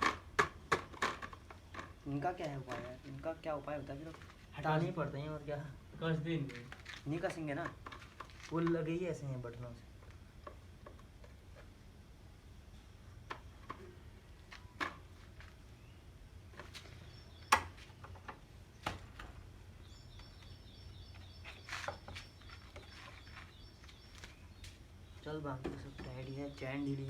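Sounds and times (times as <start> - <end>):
bird chirps: 16.8 - 18.8, 19.8 - 27.0.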